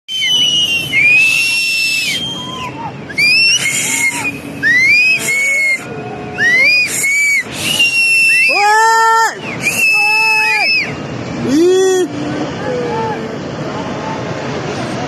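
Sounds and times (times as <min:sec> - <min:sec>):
people whistling and screaming: 0:00.1 - 0:11.0.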